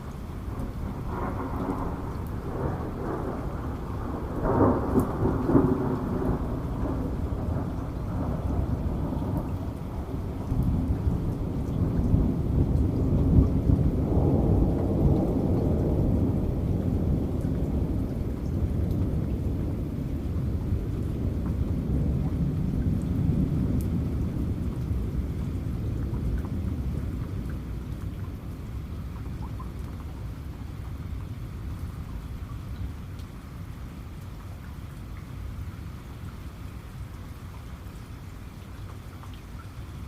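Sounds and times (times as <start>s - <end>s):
rolling thunder: 0.0s - 28.8s
steady rain: 0.0s - 40.0s.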